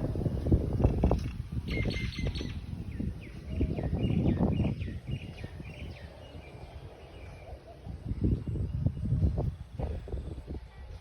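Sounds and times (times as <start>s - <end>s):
low rumbling noise: 0.0s - 1.8s
small birds chirping: 0.7s - 9.7s.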